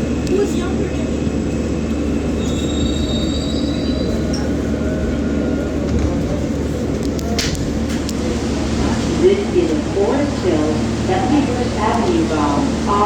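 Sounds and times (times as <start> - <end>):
subway train rumbling: 0.0 - 13.0
high wheel squeal: 2.3 - 4.6.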